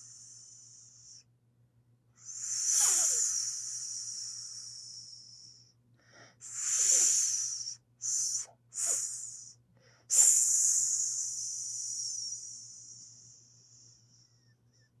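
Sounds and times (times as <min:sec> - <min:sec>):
snake hissing: 0:00.0 - 0:01.2, 0:02.2 - 0:05.6, 0:06.4 - 0:09.5, 0:10.1 - 0:14.0.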